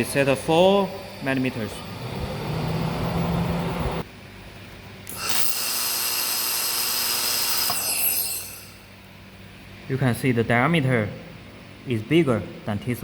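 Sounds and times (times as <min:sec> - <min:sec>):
high-pitched whine with hiss: 0:00.0 - 0:04.1
laser welder humming: 0:00.0 - 0:04.1, 0:05.0 - 0:09.6.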